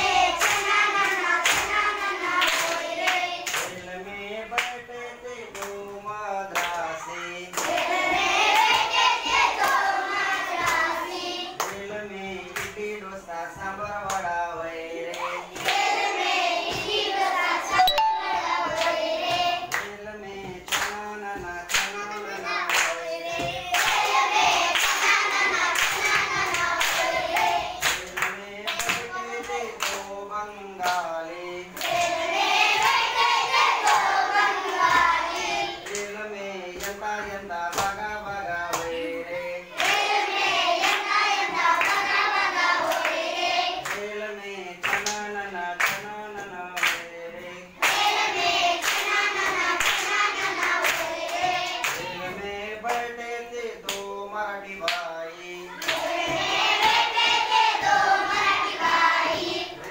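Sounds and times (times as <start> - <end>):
children singing: 0.0 - 3.6, 6.8 - 11.7, 15.1 - 19.9, 21.1 - 28.0, 28.7 - 36.2, 38.8 - 44.0, 47.6 - 52.6, 55.3 - 59.9
children clapping: 0.1 - 3.8, 4.5 - 4.8, 5.5 - 5.8, 6.5 - 6.9, 7.5 - 11.9, 15.1 - 20.0, 20.7 - 30.2, 30.8 - 31.1, 31.8 - 37.0, 37.7 - 38.1, 38.7 - 39.0, 39.8 - 44.2, 44.8 - 47.1, 47.8 - 53.2, 53.8 - 54.1, 54.8 - 55.1, 55.8 - 59.9.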